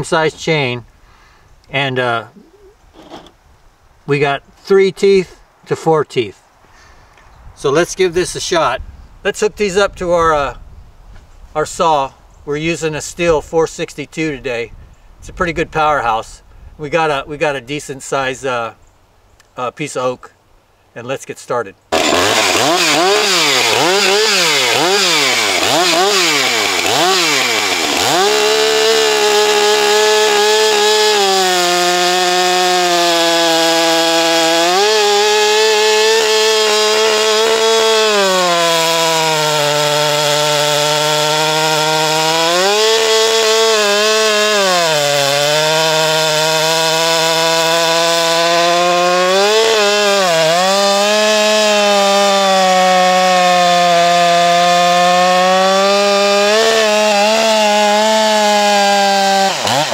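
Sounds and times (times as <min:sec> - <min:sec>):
chainsaw revving and cutting wood: 0:03.0 - 0:03.3, 0:21.9 - 0:59.9.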